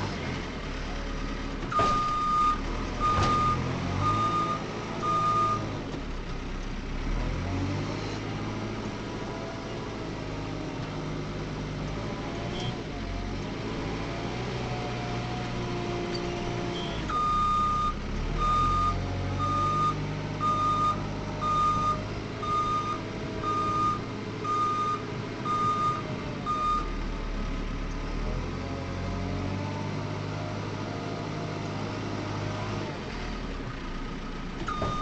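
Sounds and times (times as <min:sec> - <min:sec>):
diesel engine running: 0:00.0 - 0:35.0
reversing alarm beeping: 0:01.8 - 0:05.6, 0:17.1 - 0:26.9, 0:34.7 - 0:35.0.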